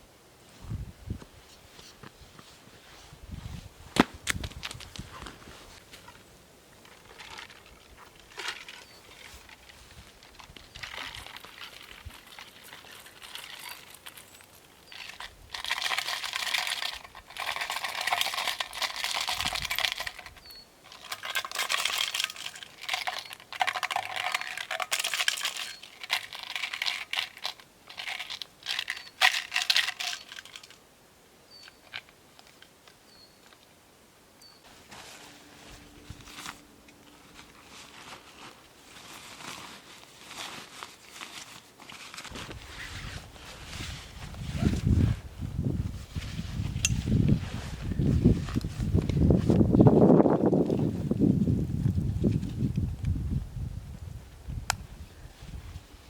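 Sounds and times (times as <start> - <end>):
rustling and crinkling: 0.5 - 30.8, 34.6 - 56.0
faint high chirps: 34.4 - 34.7.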